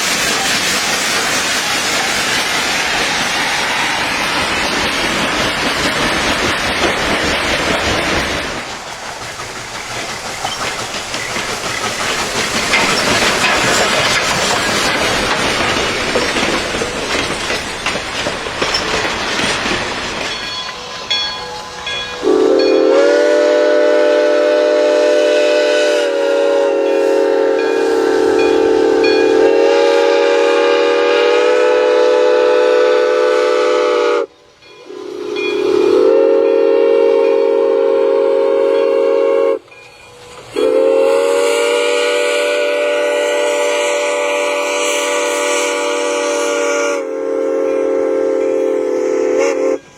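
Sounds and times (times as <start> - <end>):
train running: 0.0 - 49.9
train horn blasts: 21.4 - 49.9.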